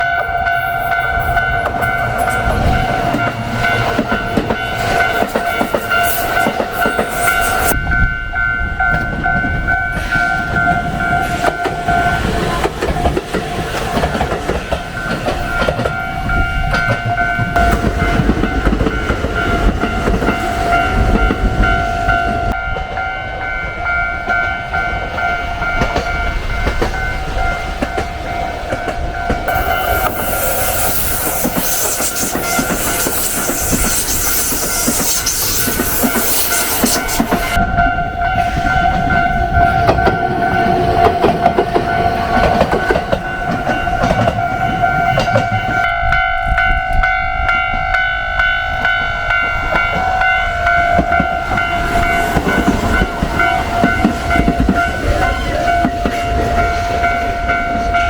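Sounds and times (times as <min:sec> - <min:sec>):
level crossing bells ringing: 0:00.0 - 0:13.3, 0:32.3 - 0:58.0
train wheels rumbling and clattering: 0:00.0 - 0:58.0.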